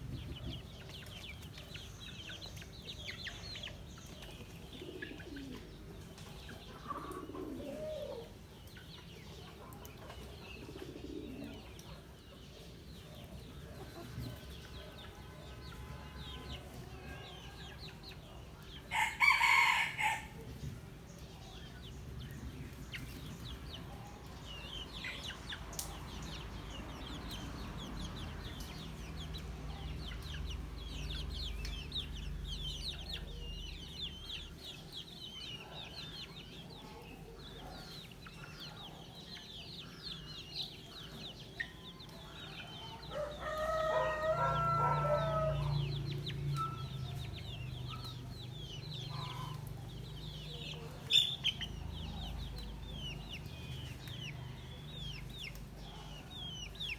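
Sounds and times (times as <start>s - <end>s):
chickens clucking: 0.0s - 56.9s
rooster crowing: 18.9s - 20.4s, 43.1s - 46.0s.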